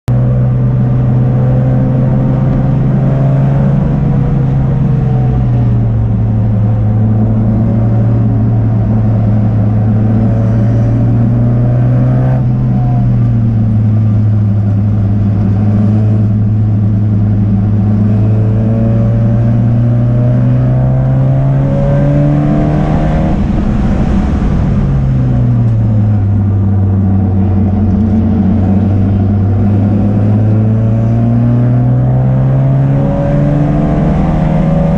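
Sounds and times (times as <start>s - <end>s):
race car engine at high revs: 0.1s - 34.9s.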